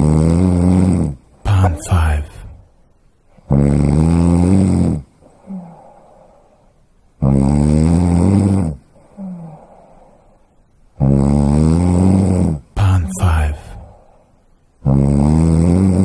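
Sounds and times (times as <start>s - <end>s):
loud rasping snoring: 0.0s - 2.6s, 3.5s - 5.1s, 7.2s - 8.8s, 11.0s - 12.7s, 14.8s - 16.0s.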